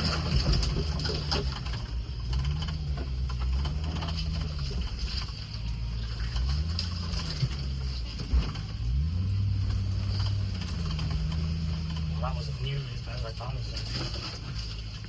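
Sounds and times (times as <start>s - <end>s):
car engine running at low speed: 0.0s - 15.0s.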